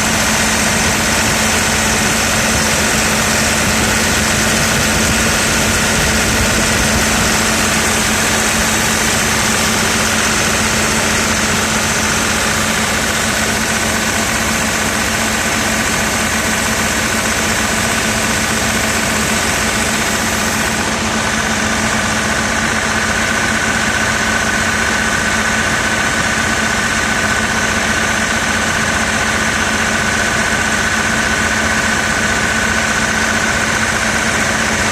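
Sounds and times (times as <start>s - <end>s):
high whine: 0.0s - 24.6s
diesel engine idling: 0.0s - 34.9s.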